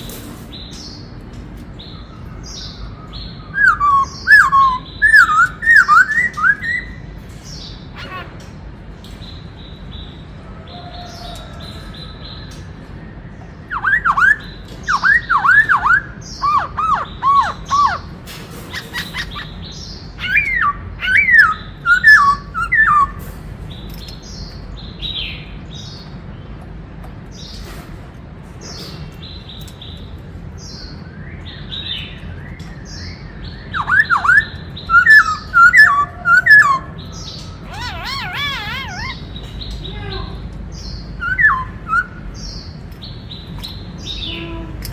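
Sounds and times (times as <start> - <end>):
faint high chirping: 31.6 - 40.3.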